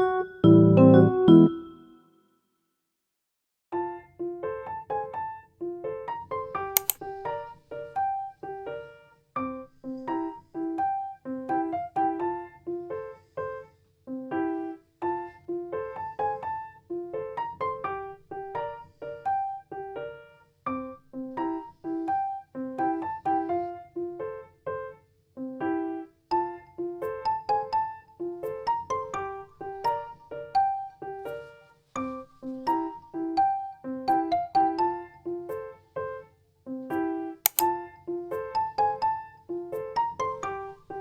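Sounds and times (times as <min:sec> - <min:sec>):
gentle keyboard melody: 0:00.0 - 0:02.2, 0:25.5 - 0:35.8, 0:37.0 - 0:41.0.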